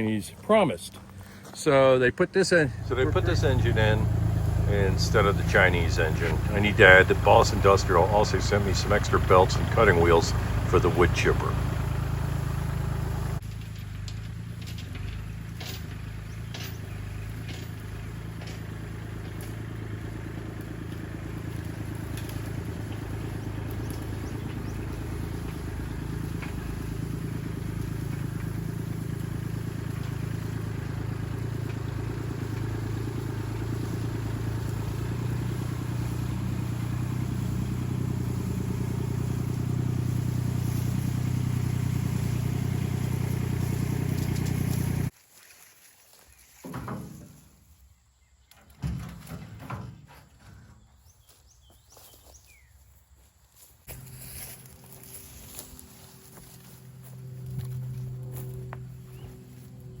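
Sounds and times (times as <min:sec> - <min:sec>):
wood chipper engine running: 0:00.0 - 0:45.2, 0:53.8 - 1:00.0.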